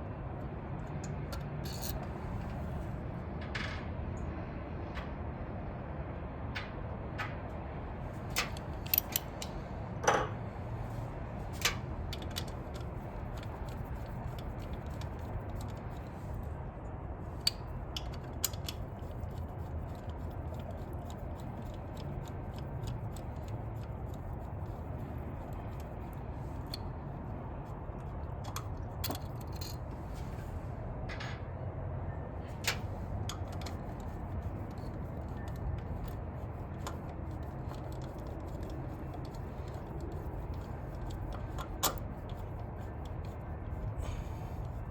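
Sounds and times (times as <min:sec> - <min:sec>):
low background hum: 0:00.0 - 0:44.9
hand tools clicking on metal: 0:32.6 - 0:43.9.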